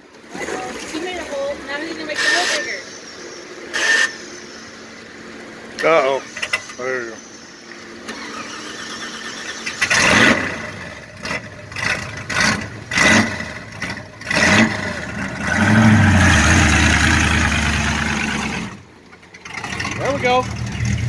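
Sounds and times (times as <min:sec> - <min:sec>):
truck engine revving: 0:03.6 - 0:21.0
tires spinning in dirt: 0:05.2 - 0:21.0.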